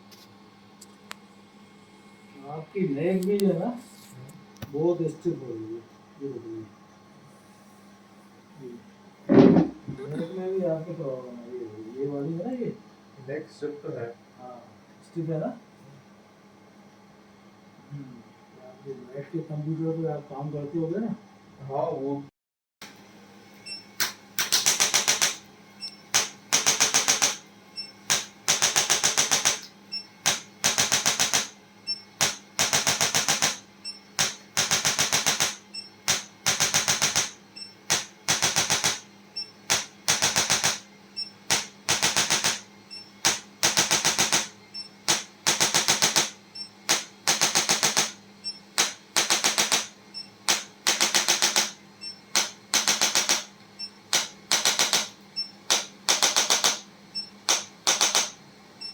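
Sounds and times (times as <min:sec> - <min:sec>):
steady low hum: 0:00.0 - 0:58.9
rapid mechanical tapping: 0:24.0 - 0:58.4.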